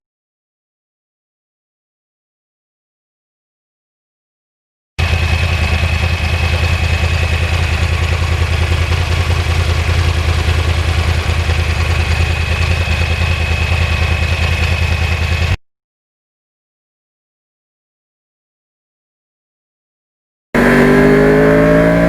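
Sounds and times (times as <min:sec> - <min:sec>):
motorcycle engine idling: 0:05.0 - 0:15.6.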